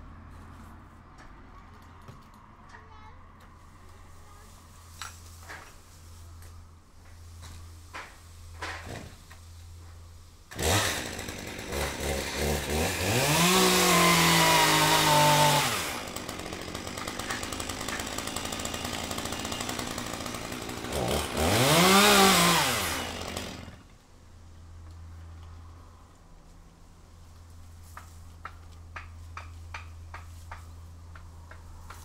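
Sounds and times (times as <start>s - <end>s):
chainsaw engine revving: 10.5s - 23.9s.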